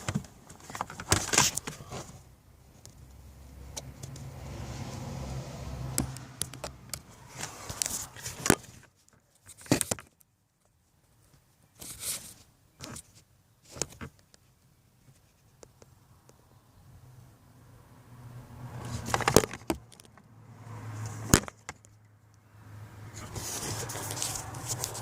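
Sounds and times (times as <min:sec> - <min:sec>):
handling clicks and scrapes: 0:00.0 - 0:03.1, 0:05.9 - 0:10.3, 0:11.2 - 0:16.4, 0:18.8 - 0:20.3, 0:21.0 - 0:22.1, 0:23.1 - 0:25.0.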